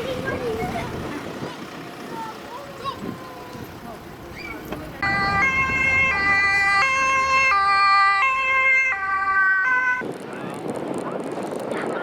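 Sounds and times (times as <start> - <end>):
two-tone emergency siren: 5.0 - 10.0.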